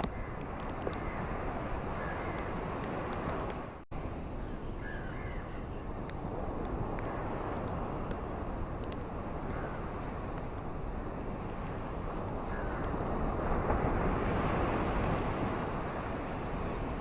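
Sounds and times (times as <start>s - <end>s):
distant bird calling: 0.0s - 2.7s, 4.4s - 5.9s, 12.5s - 13.0s.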